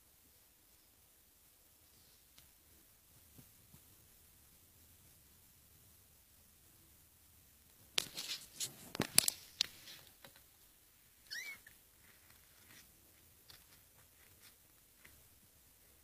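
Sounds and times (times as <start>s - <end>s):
cat meowing: 11.2s - 11.8s.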